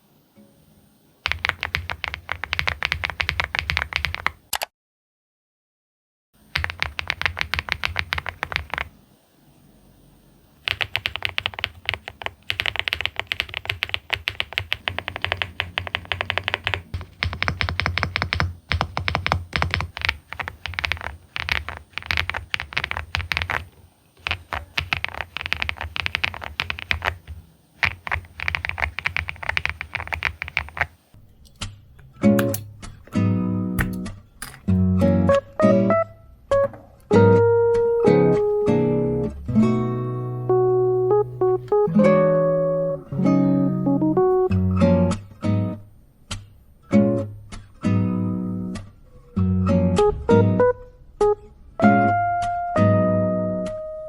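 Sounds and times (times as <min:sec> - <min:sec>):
mechanical keyboard clicks: 0:01.2 - 0:04.7, 0:06.5 - 0:08.9, 0:10.6 - 0:31.6.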